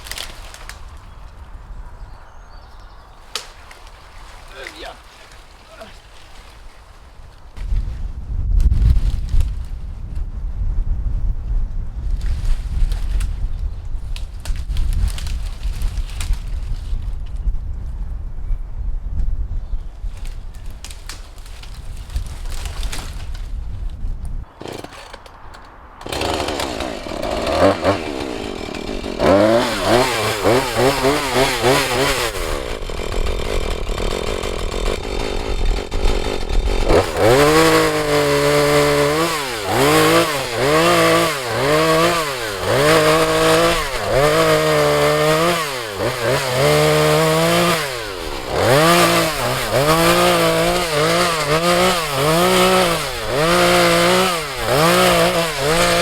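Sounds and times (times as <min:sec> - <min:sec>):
chainsaw cutting into tree: 0:00.0 - 0:00.8, 0:24.5 - 0:56.0.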